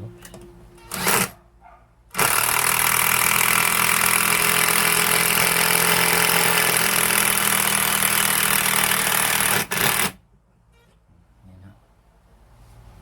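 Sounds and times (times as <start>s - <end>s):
cordless impact drill whirring: 0.9s - 1.4s, 2.1s - 10.2s.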